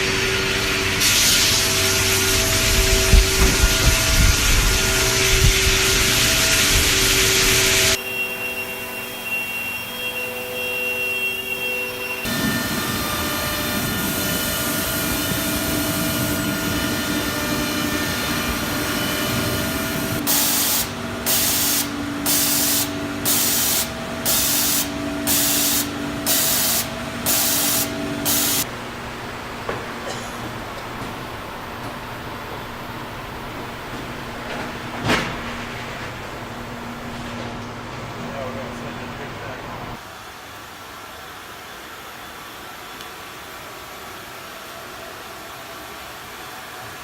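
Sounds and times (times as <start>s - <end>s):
short hissing bursts: 20.2s - 28.7s.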